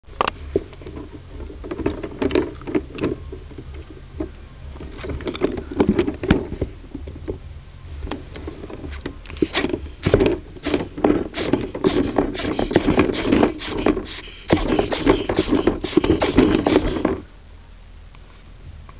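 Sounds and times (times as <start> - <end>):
ferret scratching inside a case: 9.4 - 17.2.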